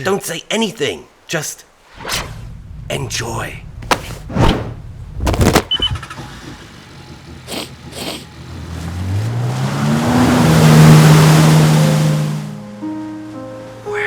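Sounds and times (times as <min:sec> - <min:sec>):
short swishes: 0:01.8 - 0:03.1, 0:03.7 - 0:06.0
jet ski engine revving: 0:05.7 - 0:12.6.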